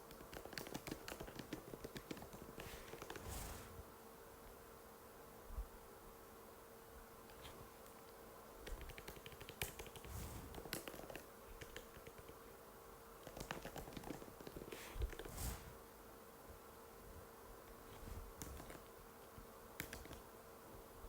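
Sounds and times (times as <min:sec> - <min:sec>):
laptop keyboard typing: 0:00.2 - 0:03.2, 0:08.7 - 0:12.3, 0:19.8 - 0:20.2.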